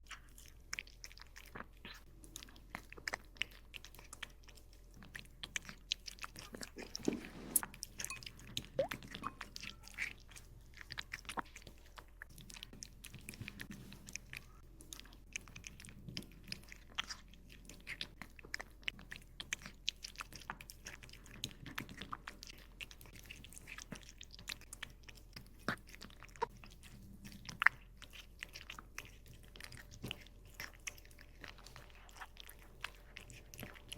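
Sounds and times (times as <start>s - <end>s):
cat chewing wet crunching: 0.0s - 33.9s.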